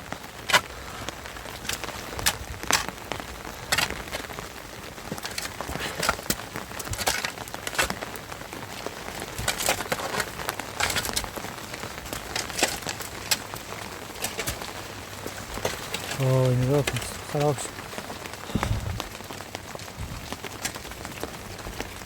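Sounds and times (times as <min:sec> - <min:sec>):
raindrops tapping close by: 0:00.0 - 0:22.0
steady rain falling: 0:00.0 - 0:22.0.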